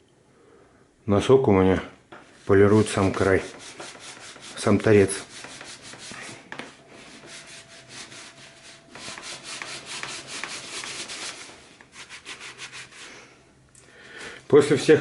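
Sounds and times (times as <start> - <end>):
sock rubbing on leather edge: 2.7 - 6.3, 7.2 - 13.1.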